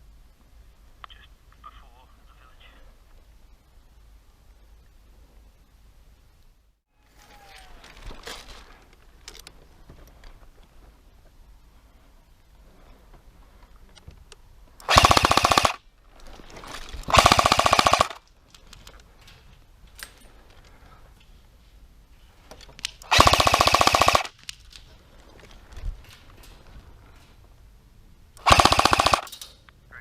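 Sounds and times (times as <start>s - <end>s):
airsoft gun full-auto bursts: 14.8s - 15.8s, 17.1s - 18.2s, 23.0s - 24.3s, 28.4s - 29.3s.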